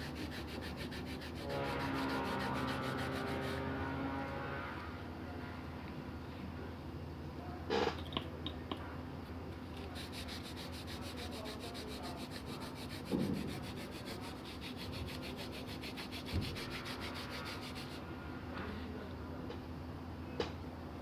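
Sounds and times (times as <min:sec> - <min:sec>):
fast rubbing strokes: 0:00.0 - 0:04.3, 0:09.8 - 0:18.1.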